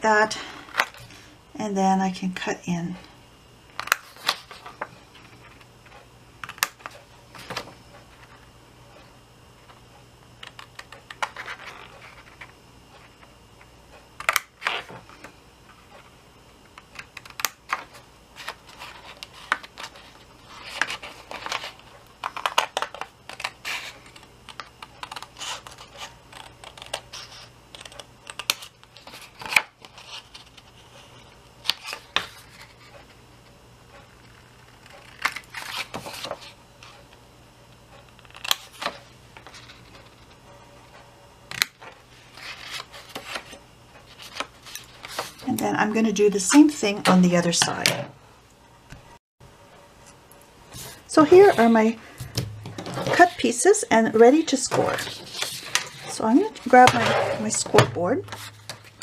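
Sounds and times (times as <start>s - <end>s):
scissors snipping paper: 20.6s - 30.5s
paper handling: 54.7s - 59.0s.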